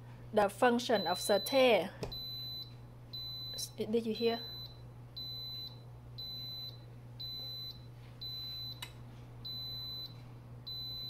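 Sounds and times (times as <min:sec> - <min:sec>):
pressure cooker beeping: 0:05.2 - 0:08.8, 0:10.7 - 0:11.0.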